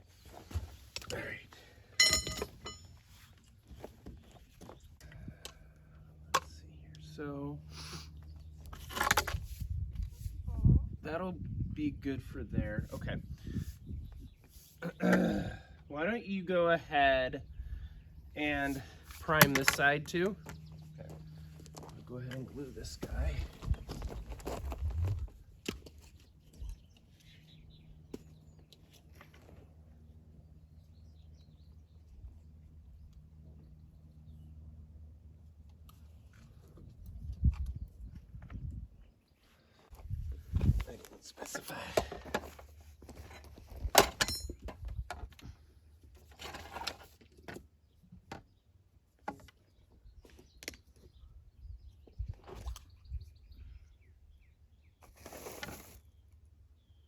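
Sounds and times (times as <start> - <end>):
faint birds chirping: 0.0 - 9.3, 10.0 - 43.7, 45.3 - 57.0
bird chirp: 20.3 - 22.0, 26.0 - 34.8, 49.5 - 55.1, 56.0 - 57.0
rustle: 55.0 - 56.3.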